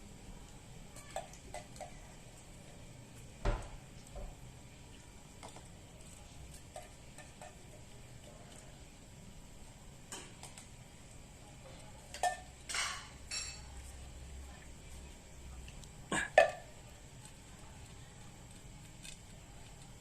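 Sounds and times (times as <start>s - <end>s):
dishes clinking and knocking: 3.4s - 4.4s, 6.7s - 7.7s, 12.1s - 13.7s.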